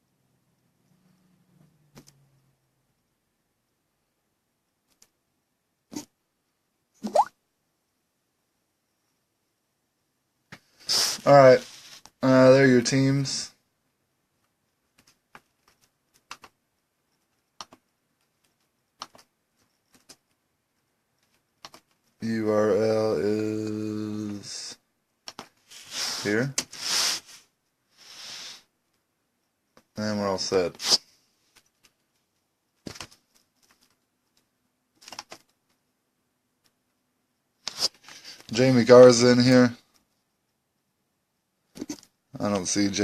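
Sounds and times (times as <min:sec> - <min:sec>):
faint steady hum: 0:00.0 - 0:43.0
keyboard keys clicking: 0:15.0 - 0:16.6, 0:17.3 - 0:19.3, 0:21.2 - 0:22.0, 0:35.0 - 0:35.6.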